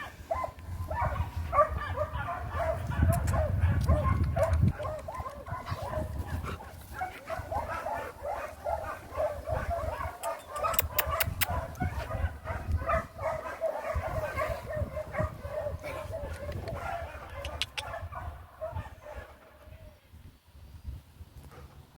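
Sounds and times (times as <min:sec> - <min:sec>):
dogs barking and yipping: 0:00.0 - 0:19.8
sharp clicks: 0:10.2 - 0:11.6, 0:16.3 - 0:17.9.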